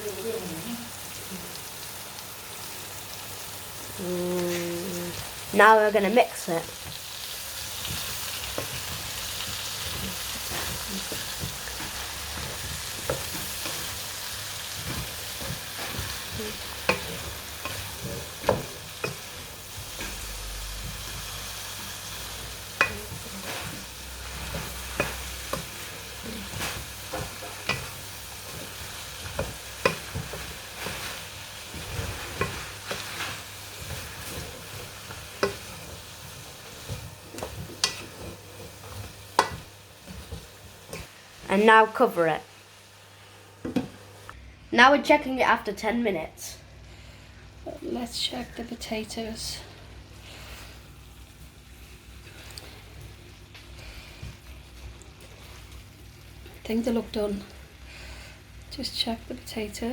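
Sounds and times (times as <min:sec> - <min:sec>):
food sizzling in a pan: 0:00.0 - 0:44.3, 0:47.6 - 0:59.9
spoon scraping a pan: 0:06.9 - 0:41.1.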